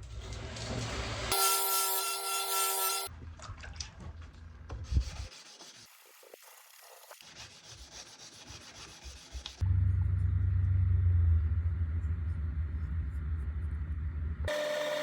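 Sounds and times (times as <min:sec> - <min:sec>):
hand sanding steel blade: 0:05.1 - 0:09.6
machine whine: 0:14.4 - 0:15.0.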